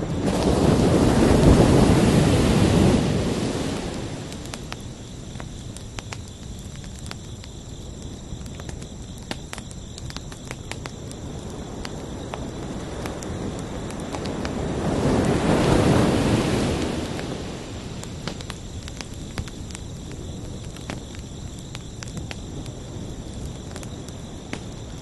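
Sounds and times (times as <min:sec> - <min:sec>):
ocean waves breaking: 0:00.0 - 0:04.6, 0:14.4 - 0:18.0
crickets chirping: 0:00.0 - 0:25.0.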